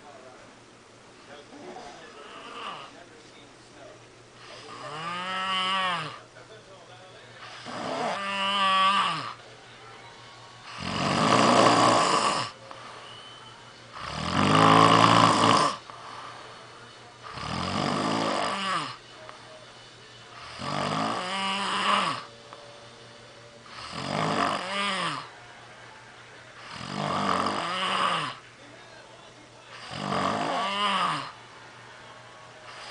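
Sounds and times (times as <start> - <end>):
person snoring: 1.6 - 2.9, 4.4 - 6.2, 7.4 - 9.4, 10.7 - 12.6, 14.0 - 16.6, 17.2 - 19.0, 20.3 - 22.4, 23.6 - 25.4, 26.6 - 28.4, 29.8 - 31.4.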